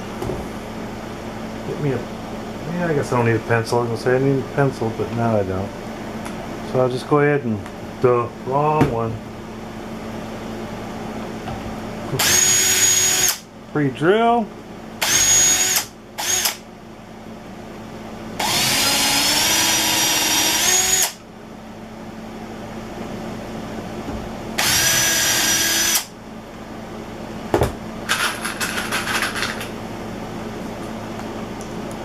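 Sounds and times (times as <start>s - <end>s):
electric drill drilling wood: 12.2s - 13.4s, 15.0s - 16.6s, 18.4s - 21.2s, 24.6s - 26.1s.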